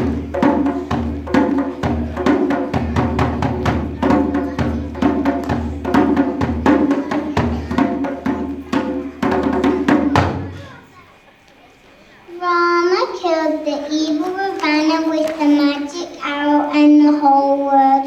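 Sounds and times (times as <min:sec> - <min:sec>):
percussion-heavy music: 0:00.0 - 0:10.7.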